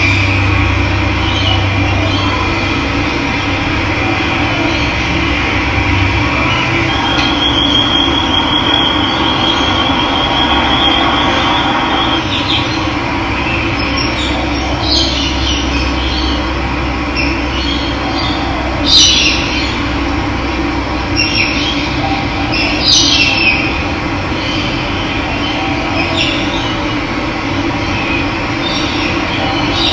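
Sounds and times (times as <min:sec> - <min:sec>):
bird chirps: 0:06.4 - 0:12.8
thin high whistle: 0:06.6 - 0:12.3.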